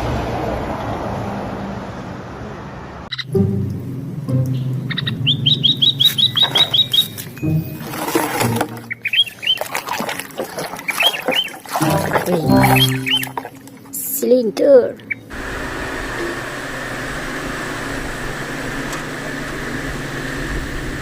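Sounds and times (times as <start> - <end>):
rising chirps: 3.1 - 8.0, 11.1 - 13.6
music with low notes: 3.2 - 9.0, 11.8 - 13.6.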